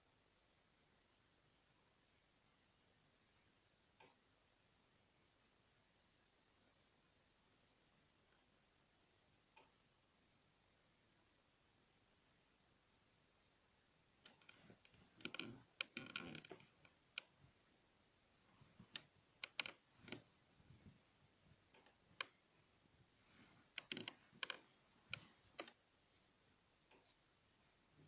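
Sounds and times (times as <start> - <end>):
sharp clicks: 18.8 - 20.3.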